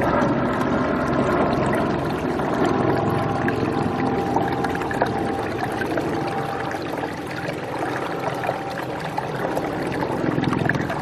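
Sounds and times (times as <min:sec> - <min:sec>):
water gurgles and splashes: 0:00.0 - 0:11.0.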